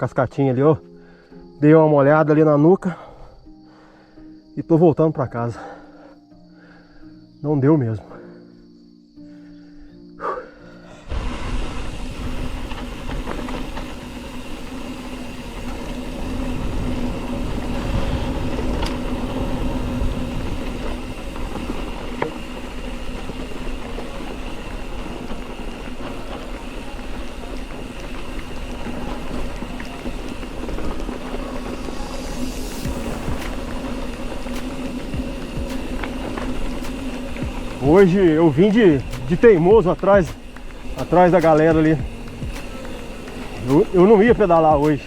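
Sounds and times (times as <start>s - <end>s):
bike tyre noise: 10.2s - 45.0s
wind rush: 11.1s - 45.0s
constant hum: 12.1s - 45.0s.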